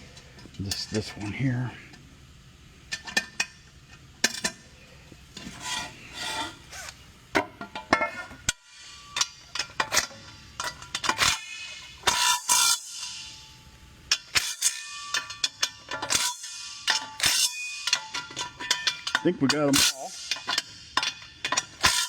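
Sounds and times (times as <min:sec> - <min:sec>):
metal clinking and scraping: 0:05.3 - 0:22.0.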